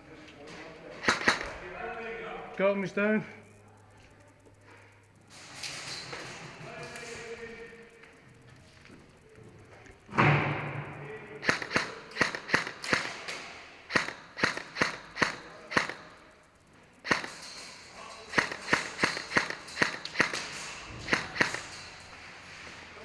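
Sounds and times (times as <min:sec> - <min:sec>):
airsoft rifle shots: 0:01.0 - 0:01.8, 0:10.1 - 0:16.3, 0:17.0 - 0:17.7, 0:18.3 - 0:21.8.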